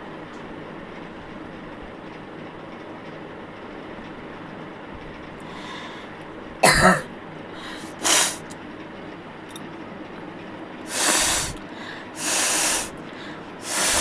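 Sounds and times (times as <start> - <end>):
steady background noise: 0.0 - 14.0
breathy burst of air: 5.5 - 6.1, 7.6 - 8.4, 10.9 - 14.0
person coughing: 6.6 - 8.4.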